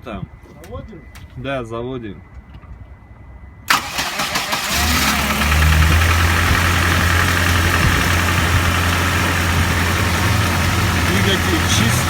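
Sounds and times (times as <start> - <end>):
engine idling: 3.7 - 12.0
starter motor cranking: 3.7 - 12.0.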